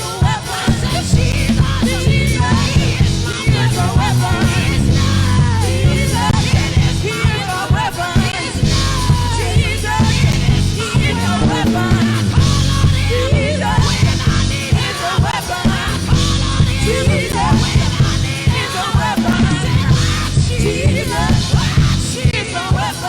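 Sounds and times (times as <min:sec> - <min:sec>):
vocalists singing: 0:00.0 - 0:23.0
worship band music: 0:00.0 - 0:23.0
strong steady bass: 0:00.7 - 0:07.2, 0:08.5 - 0:14.8, 0:15.7 - 0:18.6, 0:19.3 - 0:22.2.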